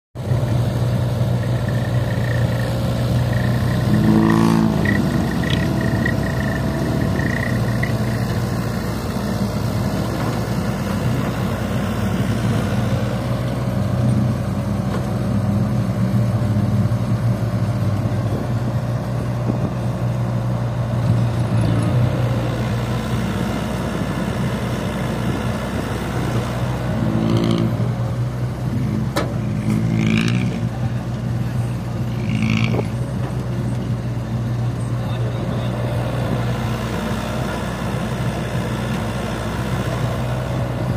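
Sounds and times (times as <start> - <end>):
heavy diesel engine running: 0.2 - 40.9.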